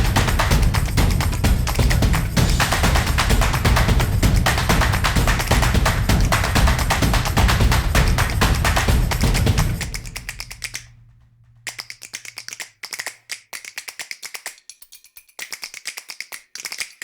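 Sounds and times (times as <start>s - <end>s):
low hum: 0.0s - 11.8s
rapid crisp clicking: 0.0s - 17.0s.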